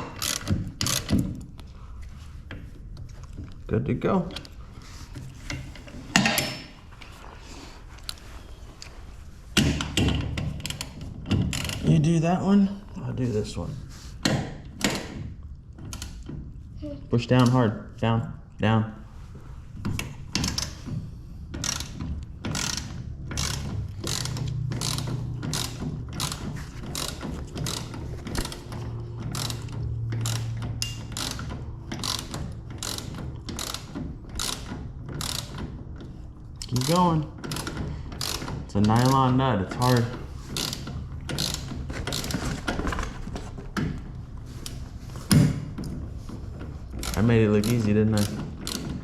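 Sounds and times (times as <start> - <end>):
hand ratchet clicking: 0.0 - 1.2, 21.5 - 42.4, 46.9 - 49.0.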